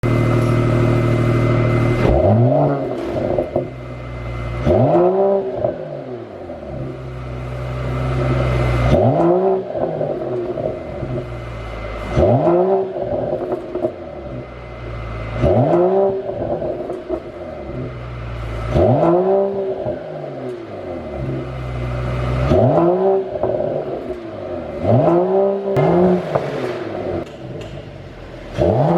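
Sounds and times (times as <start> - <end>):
exhaust pops and crackles: 0.0 - 5.8, 8.1 - 28.9
car engine revving: 0.0 - 28.9.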